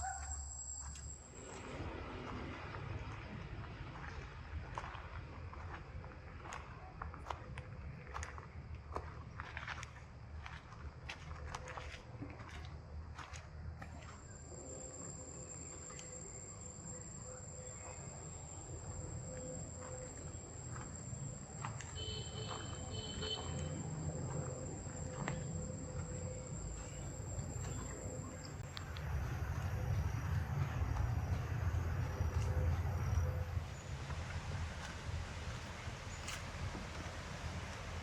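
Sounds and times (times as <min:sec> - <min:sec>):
insects droning: 0:00.0 - 0:38.0
low rumble: 0:24.0 - 0:38.0.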